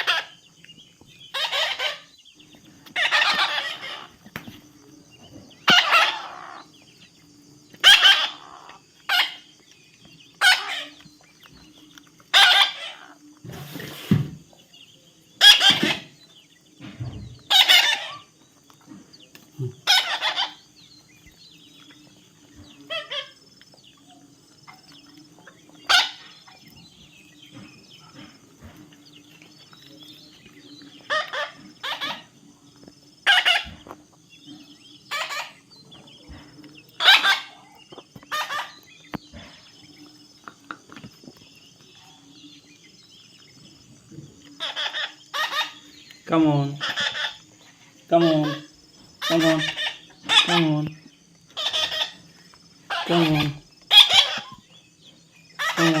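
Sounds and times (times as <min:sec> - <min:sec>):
baby parrot screeching: 0:00.0 - 0:00.3, 0:01.3 - 0:02.1, 0:03.0 - 0:04.2, 0:05.6 - 0:06.6, 0:07.8 - 0:09.4, 0:10.4 - 0:11.0, 0:12.3 - 0:13.2, 0:15.4 - 0:16.1, 0:17.5 - 0:18.3, 0:19.8 - 0:20.6, 0:25.9 - 0:26.4, 0:31.1 - 0:32.3, 0:33.2 - 0:33.8, 0:35.1 - 0:35.6, 0:37.0 - 0:37.6, 0:38.3 - 0:38.8, 0:44.6 - 0:45.8, 0:46.8 - 0:47.4, 0:48.2 - 0:50.7, 0:51.6 - 0:52.2, 0:52.9 - 0:54.6, 0:55.6 - 0:56.0.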